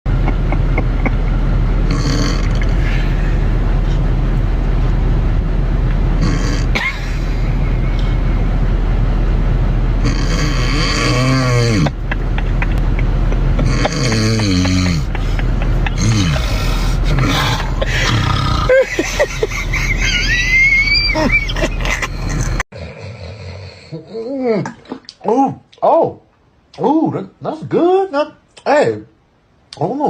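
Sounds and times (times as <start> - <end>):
person snoring loudly: 1.8 - 3.2, 6.2 - 6.8, 10.0 - 12.0, 13.6 - 15.2, 15.9 - 18.9, 22.7 - 24.6.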